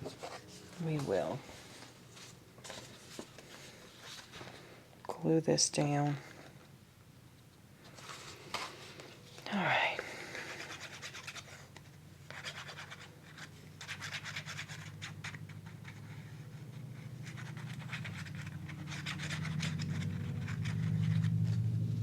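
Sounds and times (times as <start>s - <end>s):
paper rubbing: 10.4s - 11.7s, 12.3s - 21.7s
low steady hum: 15.0s - 22.0s.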